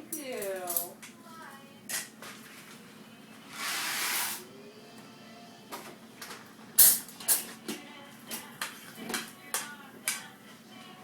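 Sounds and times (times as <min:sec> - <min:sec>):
hissing scrape: 0:03.5 - 0:04.4.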